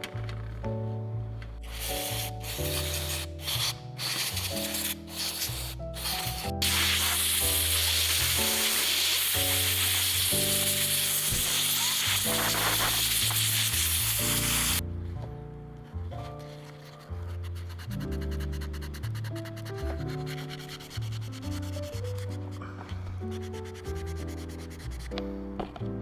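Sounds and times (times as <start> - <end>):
background music: 0.0 - 26.0
steady hiss: 4.3 - 14.8.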